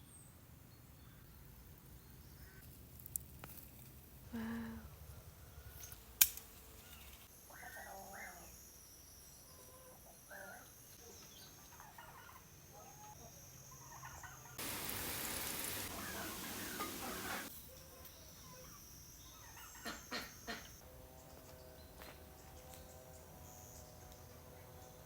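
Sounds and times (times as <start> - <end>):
farmyard fowl calling: 13.9 - 17.5, 19.4 - 20.8.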